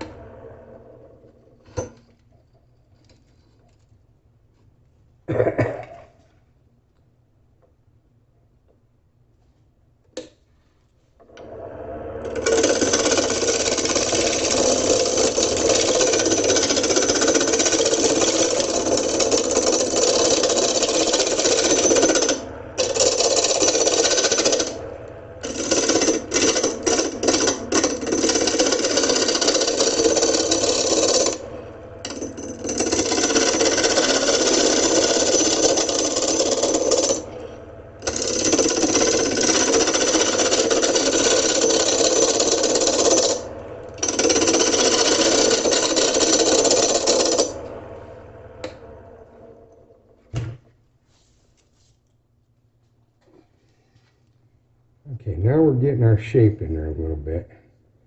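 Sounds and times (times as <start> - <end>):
wood lathe tool cutting log: 11.3 - 49.6.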